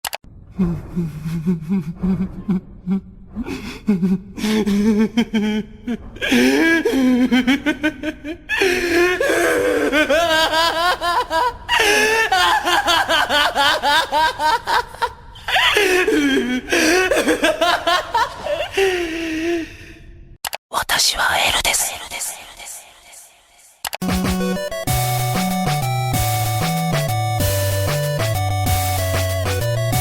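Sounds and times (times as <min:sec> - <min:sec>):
man laughing: 0:01.0 - 0:19.1.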